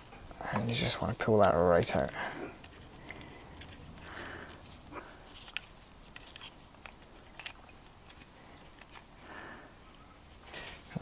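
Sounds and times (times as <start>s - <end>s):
soft rustle of handling: 0.0s - 11.0s
metal clicks and light taps: 0.2s - 4.1s.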